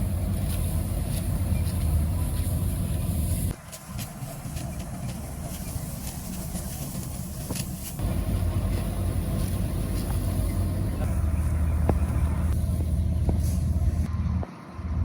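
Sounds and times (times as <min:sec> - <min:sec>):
engine running low hum: 0:00.0 - 0:15.0.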